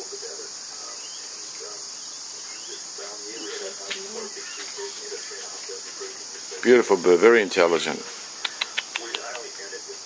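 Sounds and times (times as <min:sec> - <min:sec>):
insect chorus drone: 0:00.0 - 0:10.0
faint bird calls: 0:00.9 - 0:06.2, 0:08.2 - 0:09.3
sharp click: 0:08.4 - 0:09.5.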